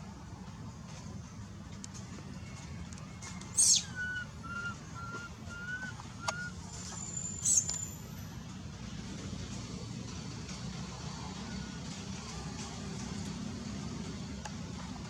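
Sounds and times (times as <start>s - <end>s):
shrill bird calls: 3.5s - 6.6s, 7.4s - 7.8s
whistled bird notes: 3.5s - 7.8s.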